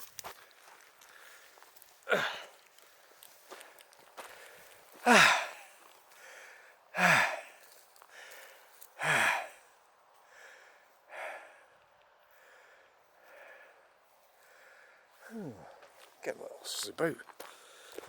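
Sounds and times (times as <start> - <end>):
person breathing heavily: 0.3 - 16.0, 17.4 - 18.0
voiced sighing exhalations: 1.1 - 3.6, 4.2 - 9.7, 14.5 - 15.9.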